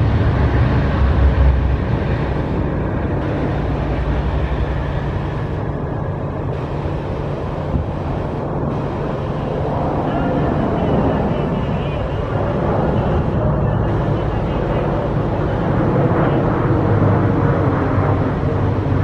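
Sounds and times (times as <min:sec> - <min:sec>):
train rumbling: 0:00.0 - 0:19.0.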